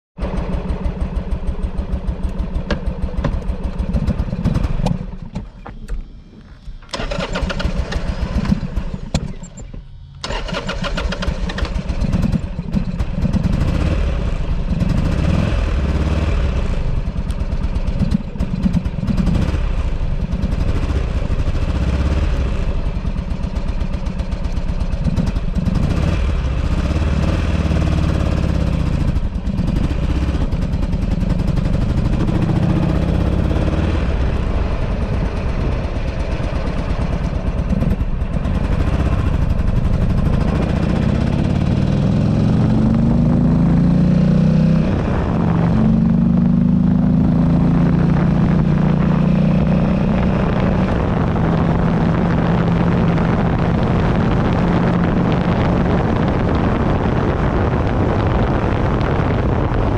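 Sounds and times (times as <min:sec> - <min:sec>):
motorcycle engine running unevenly: 0:00.2 - 0:10.4, 0:11.0 - 0:59.9.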